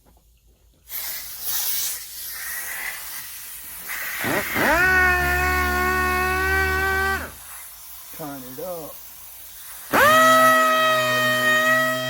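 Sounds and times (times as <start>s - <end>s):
rough hiss: 0.8s - 4.7s, 5.8s - 9.9s
power tool motor whining: 4.2s - 7.4s, 9.9s - 12.0s.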